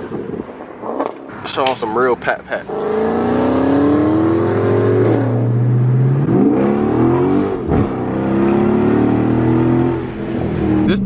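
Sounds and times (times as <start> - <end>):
car engine accelerating hard: 2.5 - 11.0.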